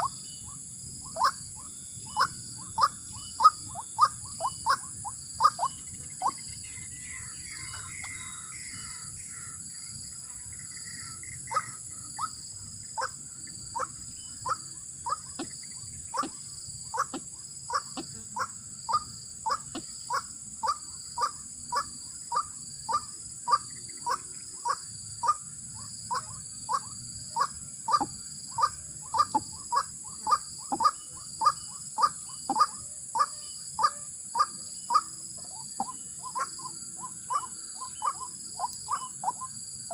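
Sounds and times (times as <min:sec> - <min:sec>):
waterhen kwak calls: 0:01.0 - 0:06.5, 0:11.5 - 0:12.4, 0:13.0 - 0:15.5, 0:16.1 - 0:25.4, 0:26.1 - 0:39.6.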